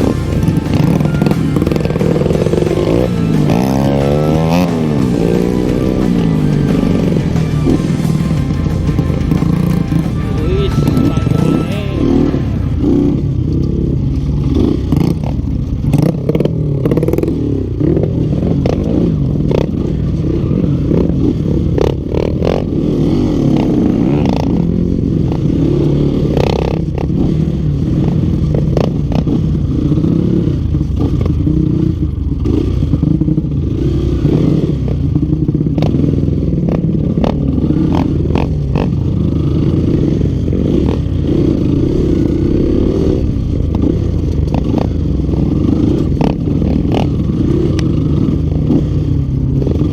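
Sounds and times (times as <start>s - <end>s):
motorcycle engine under throttle: 12.7s - 49.9s.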